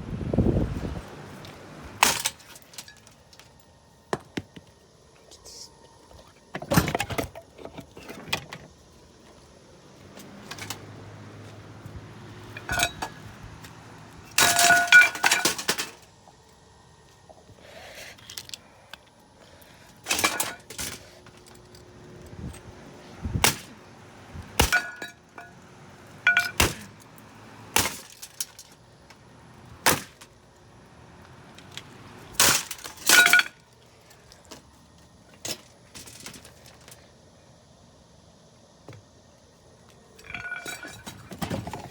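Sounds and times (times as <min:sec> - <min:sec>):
hammer smashing a fan: 0:02.0 - 0:03.0, 0:14.4 - 0:16.0, 0:23.3 - 0:23.7, 0:24.6 - 0:25.2, 0:26.3 - 0:27.0, 0:27.7 - 0:28.6, 0:29.8 - 0:30.3.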